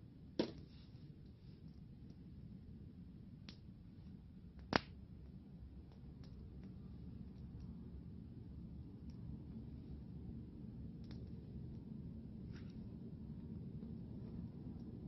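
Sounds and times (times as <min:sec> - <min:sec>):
low background rumble: 0:00.0 - 0:15.0
campfire wood popping: 0:03.4 - 0:07.7, 0:10.9 - 0:11.9
small fire ticks: 0:03.4 - 0:12.1, 0:12.7 - 0:15.0.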